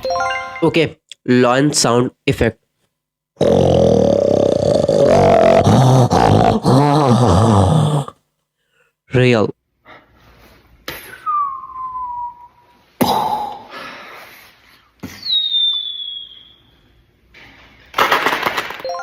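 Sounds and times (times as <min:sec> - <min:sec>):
whooshing blasts with falling whistle: 0:15.2 - 0:16.7.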